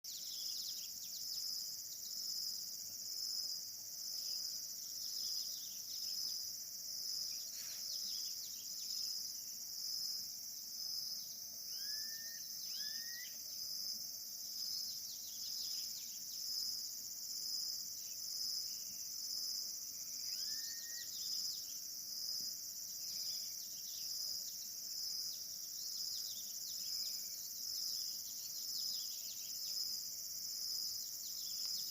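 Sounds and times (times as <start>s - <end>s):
insect chorus shrilling: 11.2s - 31.9s
rising bird calls: 11.7s - 13.4s.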